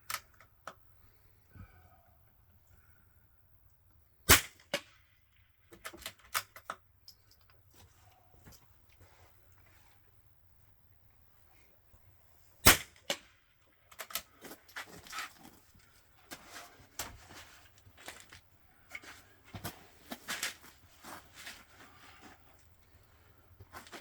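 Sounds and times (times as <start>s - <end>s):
rifle shot: 4.3s - 5.0s, 12.6s - 13.4s
clicks and knocks handling gear: 5.7s - 10.0s, 13.9s - 22.7s, 23.6s - 24.0s.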